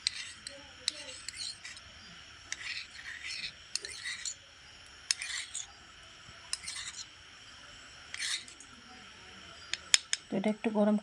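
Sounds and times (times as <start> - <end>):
spoon scraping dish: 0.0 - 1.8, 2.5 - 4.4, 5.1 - 5.8, 6.5 - 7.1, 8.1 - 8.6.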